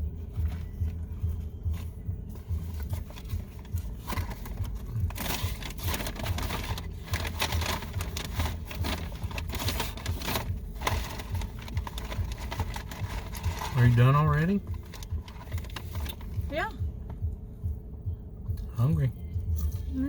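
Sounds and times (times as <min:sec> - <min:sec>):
paper wrappers rustling: 0:00.3 - 0:16.5.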